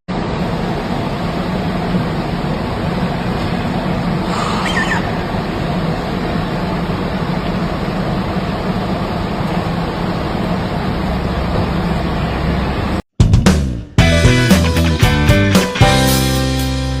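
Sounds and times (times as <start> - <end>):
low hum: 0.1 - 13.0
steady rushing noise: 0.1 - 13.0.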